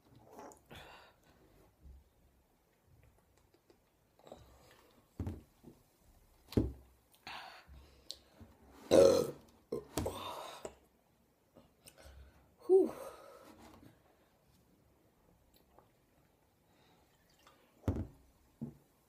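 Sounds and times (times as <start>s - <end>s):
woman burping: 8.9s - 9.9s.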